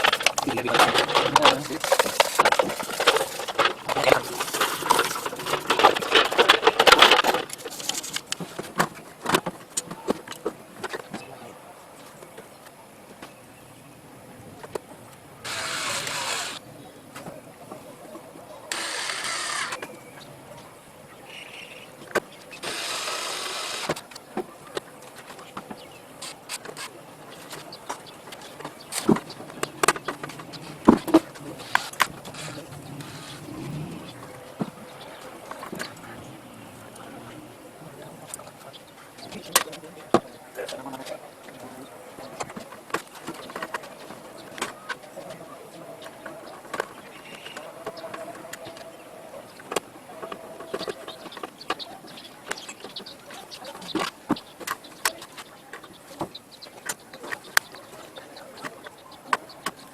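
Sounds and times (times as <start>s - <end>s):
clicks and knocks of hard parts: 0.0s - 11.3s.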